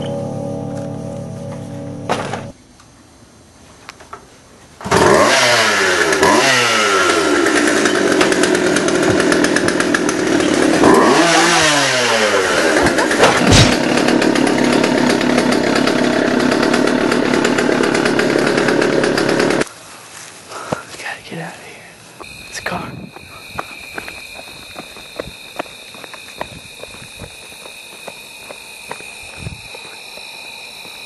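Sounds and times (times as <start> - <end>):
chainsaw running at high revs: 4.9 - 19.6, 23.2 - 31.0.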